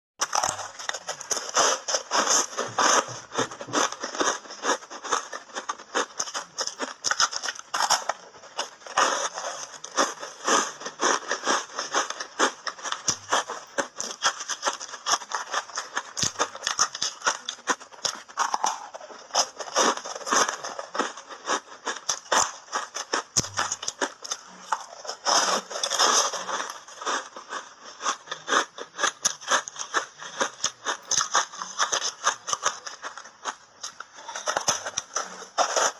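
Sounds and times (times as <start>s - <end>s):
ice being crunched and chewed: 0.2s - 35.9s.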